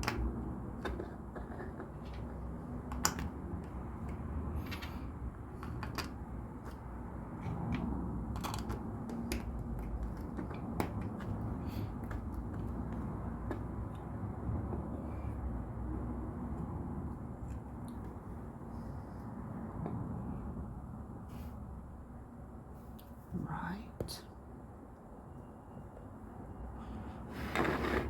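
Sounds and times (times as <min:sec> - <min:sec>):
plastic bricks clicking together: 0:00.0 - 0:03.8, 0:05.6 - 0:06.8
low room hum: 0:00.0 - 0:28.0.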